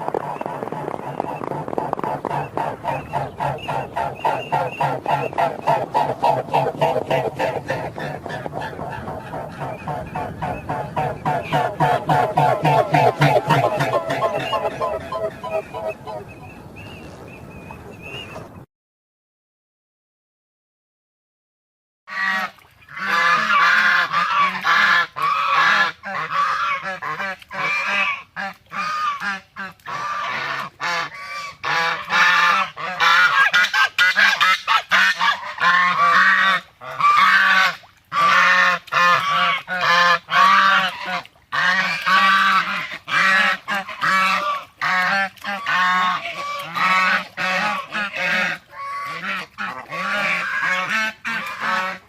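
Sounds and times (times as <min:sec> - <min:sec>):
flock of birds calling: 0:11.2 - 0:16.4.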